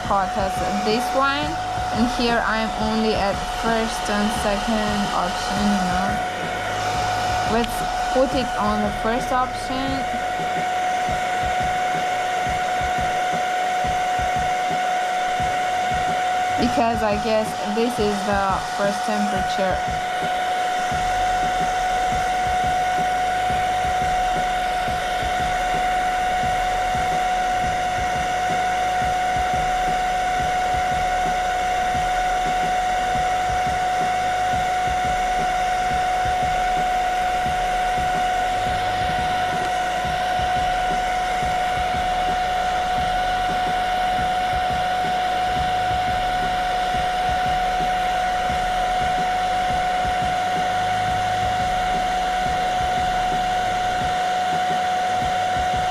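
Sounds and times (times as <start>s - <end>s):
hair dryer motor whine: 0.0s - 55.9s.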